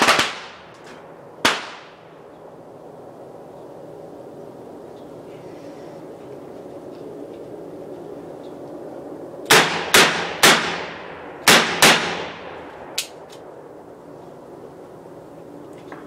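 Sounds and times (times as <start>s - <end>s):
loud gunshots echoing: 0.0s - 0.7s, 1.4s - 2.0s, 9.5s - 12.9s.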